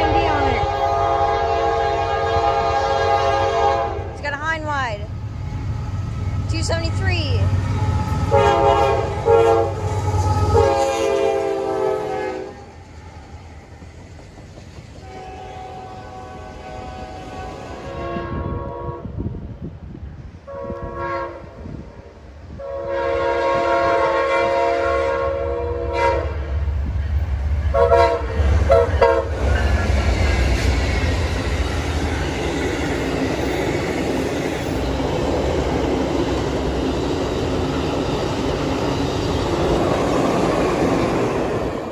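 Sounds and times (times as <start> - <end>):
train horn blasts: 0.0 - 4.2, 7.7 - 12.8, 15.0 - 19.2, 20.5 - 26.5, 27.7 - 29.6
train passing on rails: 0.0 - 41.9.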